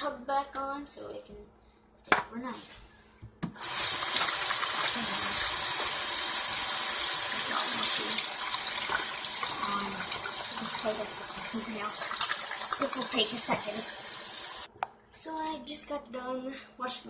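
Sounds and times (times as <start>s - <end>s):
hands washing: 3.6s - 14.3s
tap water running into sink: 3.6s - 14.7s.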